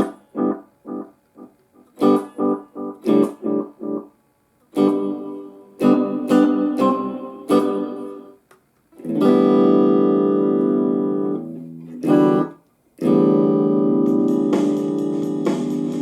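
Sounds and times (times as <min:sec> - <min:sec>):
guitar chords strummed: 0:00.0 - 0:04.1, 0:04.7 - 0:08.4, 0:09.0 - 0:16.0.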